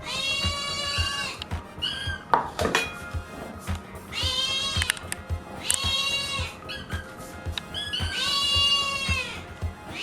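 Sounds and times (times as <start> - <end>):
kitten high-pitched crying: 0.0 - 2.3, 4.1 - 5.0, 5.6 - 10.0
kitten squeaks: 0.0 - 2.5, 4.1 - 10.0
background music with beat: 0.0 - 10.0.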